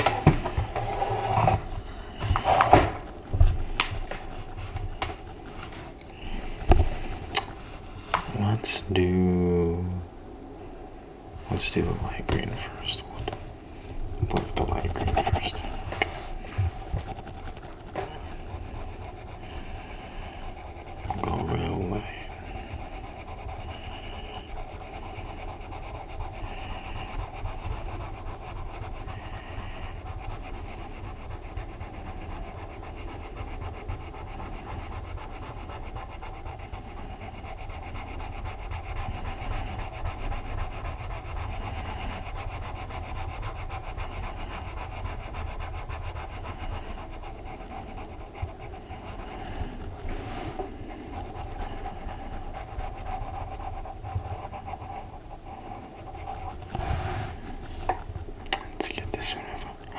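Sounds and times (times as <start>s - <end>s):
pencil rubbing on paper: 0.0s - 9.6s, 11.4s - 59.9s.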